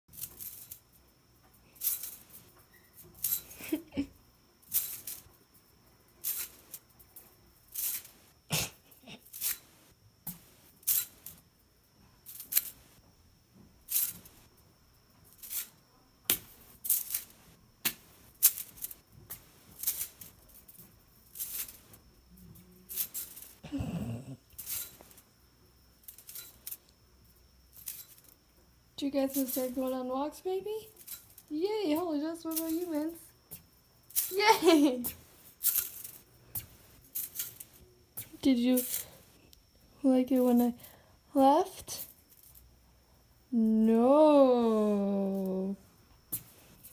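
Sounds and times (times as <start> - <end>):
light metallic clinks: 0.1 - 8.3, 18.0 - 28.5, 30.7 - 39.8.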